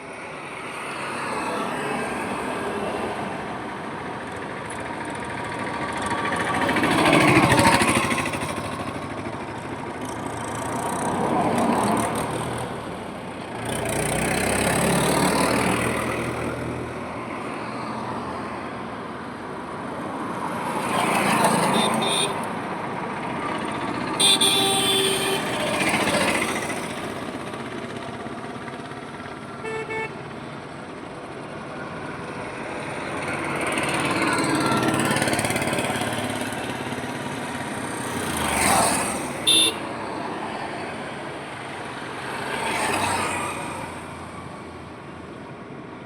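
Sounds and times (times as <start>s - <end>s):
vehicles passing on highway: 0.0s - 46.0s
car horn blasts: 21.7s - 22.5s, 24.2s - 25.7s, 29.6s - 30.2s, 39.4s - 39.8s.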